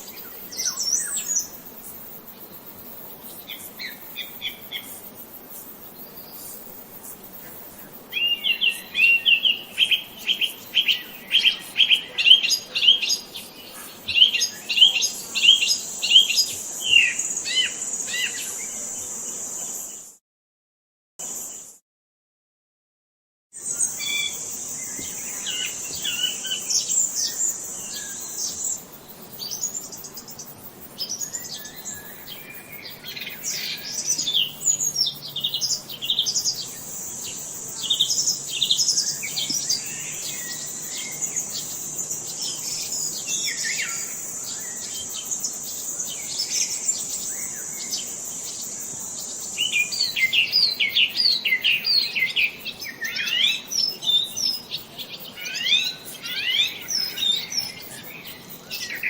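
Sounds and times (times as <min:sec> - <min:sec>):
birds chirping and singing: 0:23.8 - 0:59.0.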